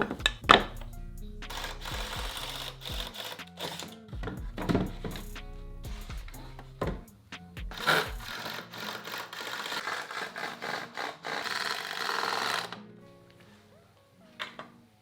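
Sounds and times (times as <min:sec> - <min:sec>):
power drill driving screws: 0:01.5 - 0:04.0, 0:07.7 - 0:12.8.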